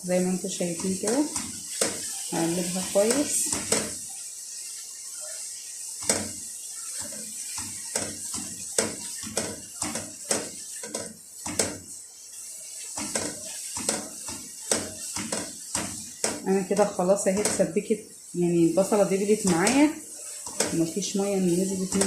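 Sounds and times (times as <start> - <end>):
faint sizzle: 0.0 - 22.0.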